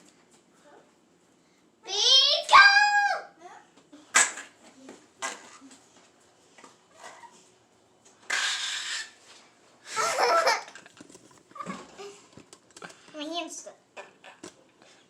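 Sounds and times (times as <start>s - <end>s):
young child giggling: 9.9s - 10.8s
breathy clicking noises: 12.2s - 13.2s.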